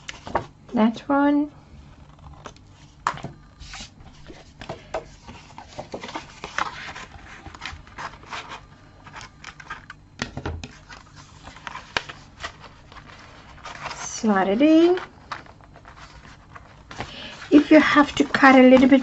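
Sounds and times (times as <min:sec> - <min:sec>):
paper and card rustling: 0:01.9 - 0:10.0, 0:10.6 - 0:19.0.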